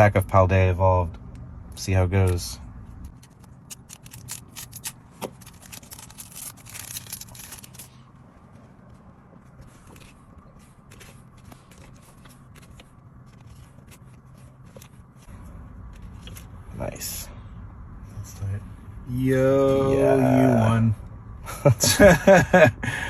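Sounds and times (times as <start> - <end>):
cards clicking and sliding: 3.0 - 7.9, 9.6 - 15.1
foil pack tearing and crinkling: 3.3 - 7.9.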